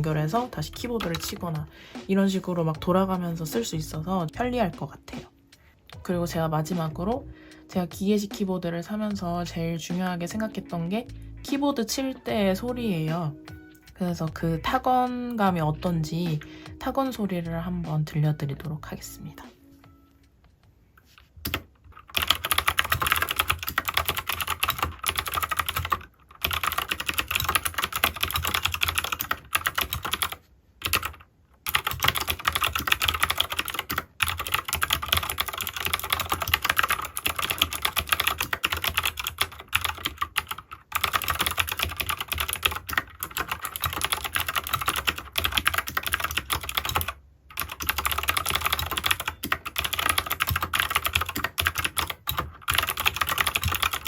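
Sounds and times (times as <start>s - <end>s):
mechanical keyboard typing: 0.0s - 4.4s, 21.4s - 54.0s.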